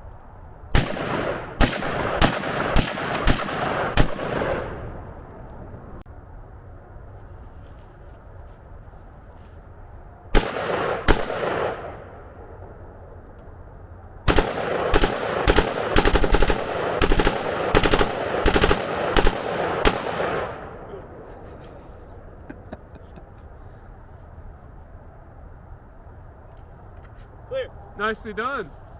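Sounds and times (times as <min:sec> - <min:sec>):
rifle shots echoing: 0:00.7 - 0:05.2, 0:10.3 - 0:12.6, 0:14.2 - 0:21.2.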